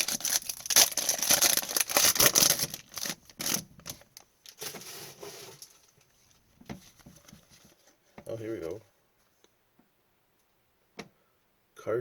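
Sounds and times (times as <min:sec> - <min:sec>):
foil wrapper crinkling and tearing: 0:00.0 - 0:06.0.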